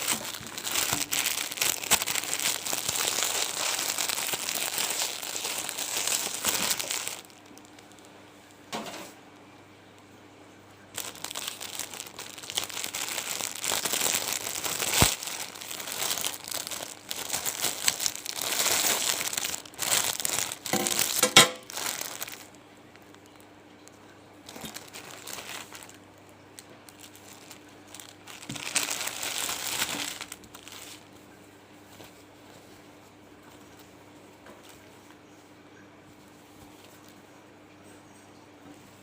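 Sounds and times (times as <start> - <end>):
packaging crinkling and tearing: 0.0 - 9.2, 10.9 - 31.1.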